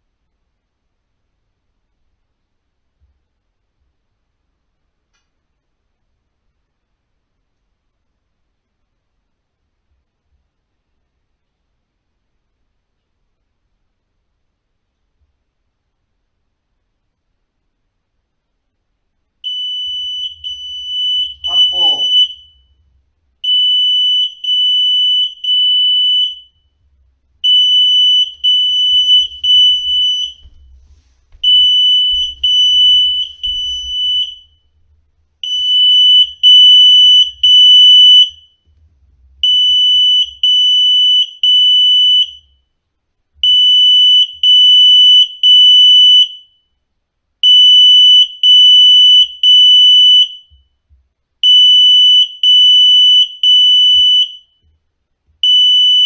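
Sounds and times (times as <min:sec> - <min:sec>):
smoke alarm beeping: 0:19.4 - 0:22.8, 0:23.4 - 0:26.7, 0:27.4 - 0:30.8, 0:31.4 - 0:34.7, 0:35.4 - 0:38.6, 0:39.4 - 0:42.6, 0:43.4 - 0:46.7, 0:47.4 - 0:50.7, 0:51.4 - 0:54.6, 0:55.4 - 0:56.0.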